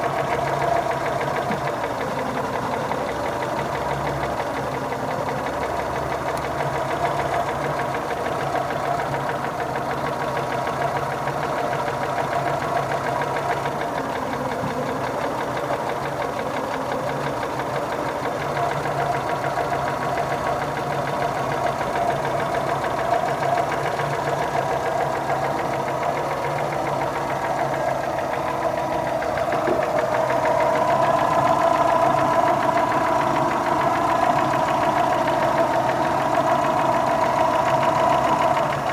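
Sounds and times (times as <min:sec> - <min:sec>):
engine running with rapid knock: 0:00.0 - 0:38.9.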